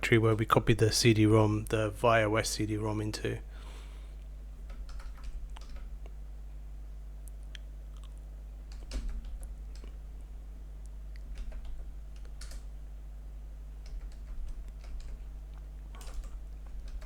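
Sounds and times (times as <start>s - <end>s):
low electrical hum: 0.0s - 17.0s
keyboard keystrokes: 4.6s - 6.0s, 8.7s - 10.0s, 11.2s - 12.7s, 13.8s - 15.2s, 15.9s - 17.0s.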